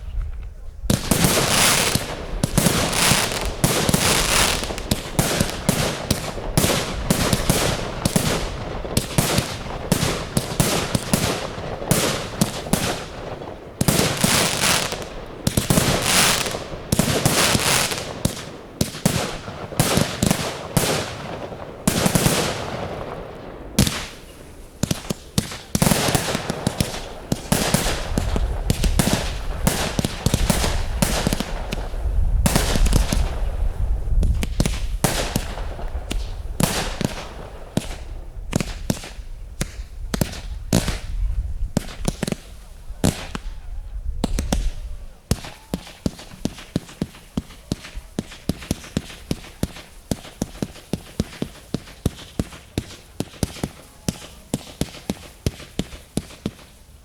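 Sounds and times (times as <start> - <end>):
fireworks bursting and crackling: 0.0 - 57.0
echoing booms: 0.9 - 41.2.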